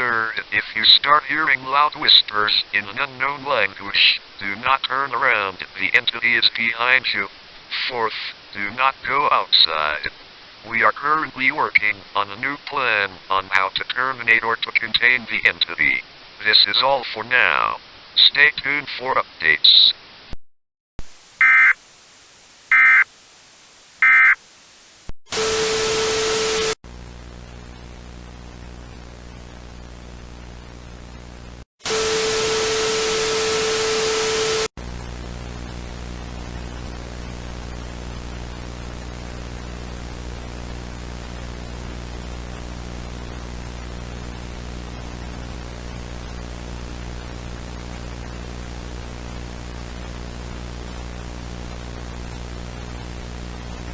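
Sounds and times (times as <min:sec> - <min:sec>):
data bursts: 0:21.0 - 0:25.1
hissing static with hum: 0:21.0 - 0:53.9.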